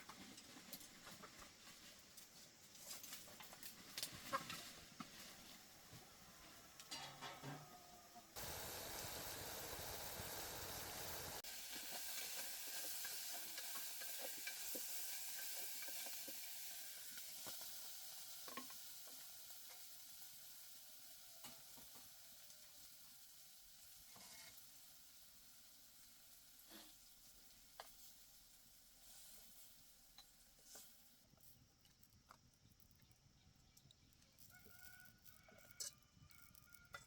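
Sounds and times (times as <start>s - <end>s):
food sizzling in a pan: 8.4s - 31.1s.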